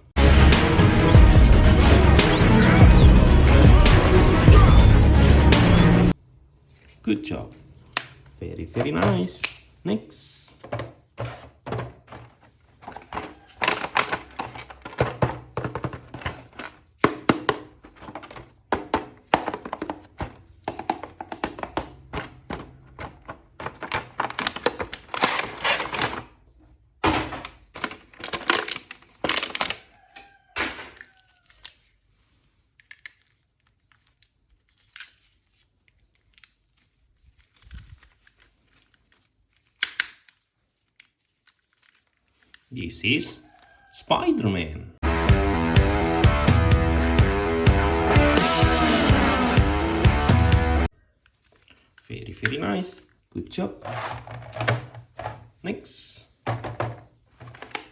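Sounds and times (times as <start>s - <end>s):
packaging crinkling: 10.6s - 26.5s, 27.3s - 42.7s, 51.2s - 55.6s, 56.5s - 57.9s
packaging tearing: 12.2s - 17.0s, 21.4s - 26.4s, 27.6s - 30.0s, 32.9s - 42.7s.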